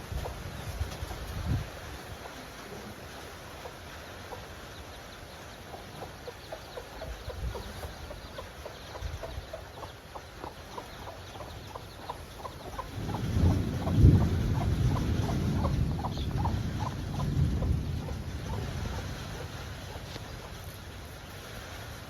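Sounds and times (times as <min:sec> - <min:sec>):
chickens clucking: 0:00.0 - 0:21.5
low rumbling noise: 0:10.4 - 0:21.1.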